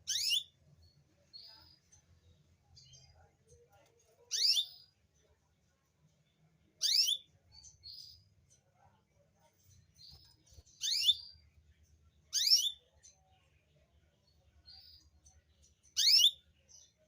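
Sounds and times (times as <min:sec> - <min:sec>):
canary calling: 0:00.0 - 0:00.6, 0:04.3 - 0:04.9, 0:06.8 - 0:07.3, 0:10.8 - 0:11.4, 0:12.3 - 0:12.9, 0:15.9 - 0:16.5.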